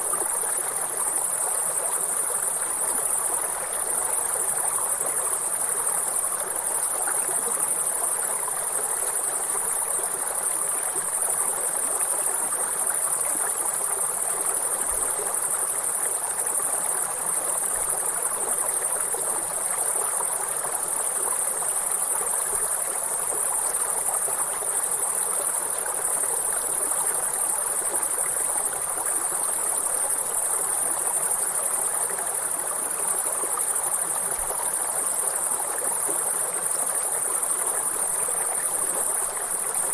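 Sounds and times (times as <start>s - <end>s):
high-pitched insect chorus: 0.0s - 39.9s
river water flowing: 21.2s - 39.9s.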